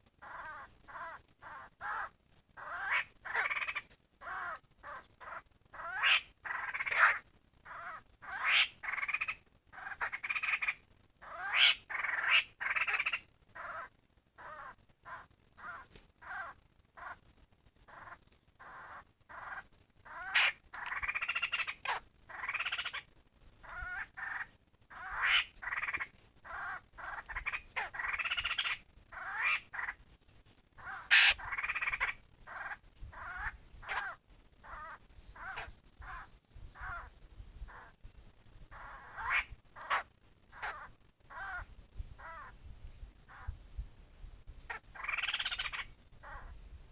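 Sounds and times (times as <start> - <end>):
bird giving harsh calls: 0.2 - 9.4, 17.9 - 23.0, 23.7 - 30.0, 30.8 - 37.1, 38.7 - 40.0.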